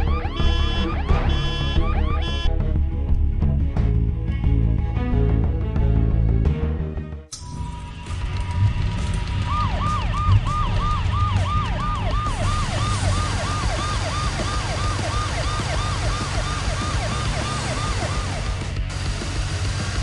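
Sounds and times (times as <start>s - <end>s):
siren yelping: 0.0s - 2.5s, 9.5s - 18.6s
steady siren tone: 0.0s - 2.6s, 9.4s - 18.8s.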